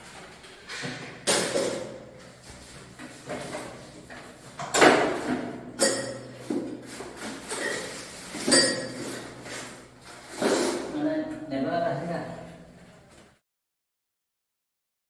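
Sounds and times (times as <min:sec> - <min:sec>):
metal tools knocking and clinking: 0:05.8 - 0:06.3, 0:08.5 - 0:09.1.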